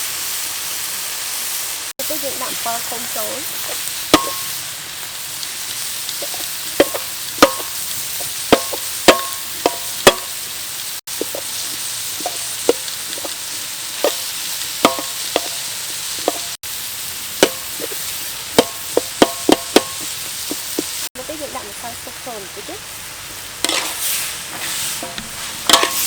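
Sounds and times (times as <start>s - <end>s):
vegetables sizzling in a pan: 0.0s - 26.0s
metal spatula clinking on pan: 4.2s - 4.5s, 14.0s - 15.6s.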